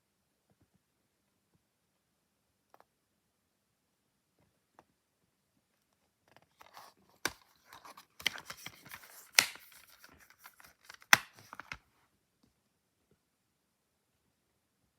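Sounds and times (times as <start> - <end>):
packaging crinkling and rustling: 6.5 - 11.8
dvd case clicks: 6.6 - 11.8.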